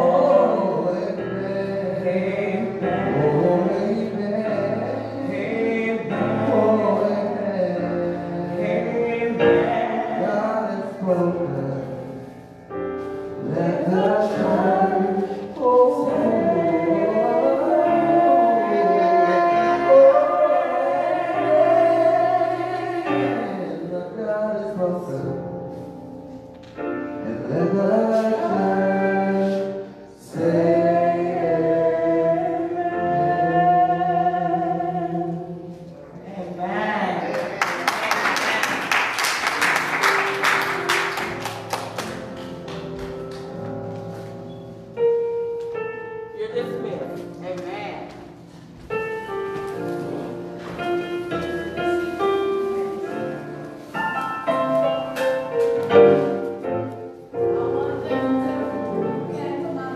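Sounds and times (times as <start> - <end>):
gospel singing: 0.0 - 26.4, 27.0 - 45.8
piano chords: 0.0 - 59.9.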